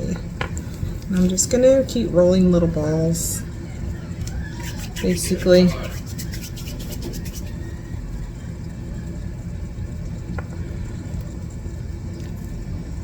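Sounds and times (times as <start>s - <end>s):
motor or fan rumble: 0.0s - 13.0s.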